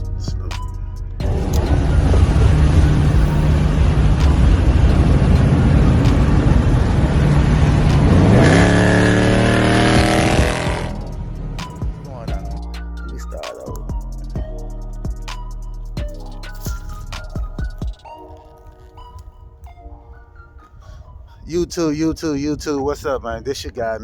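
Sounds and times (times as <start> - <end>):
car engine revving: 0.0 - 13.4.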